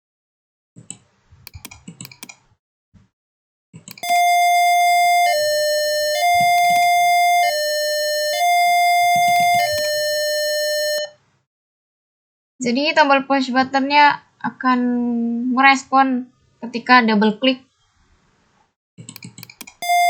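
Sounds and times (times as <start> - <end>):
clicks: 1.5 - 2.4, 3.9 - 11.1, 19.1 - 20.0
electronic buzzer siren: 4.0 - 11.1.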